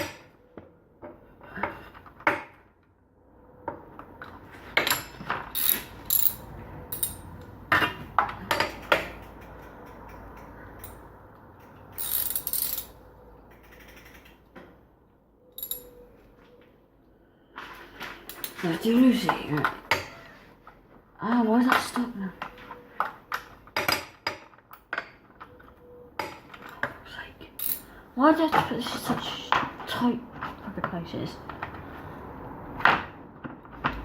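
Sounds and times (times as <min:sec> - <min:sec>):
metal tools knocking: 0:04.7 - 0:12.9, 0:15.6 - 0:16.0
ratchet wrench clicking: 0:05.5 - 0:07.3, 0:11.7 - 0:12.9.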